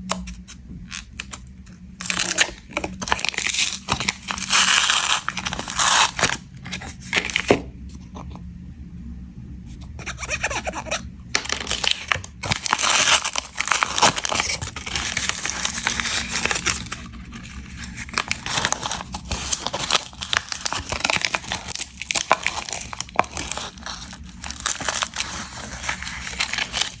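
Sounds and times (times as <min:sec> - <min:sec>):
plastic wrapper crinkling and tearing: 0:00.0 - 0:08.4, 0:10.0 - 0:27.0.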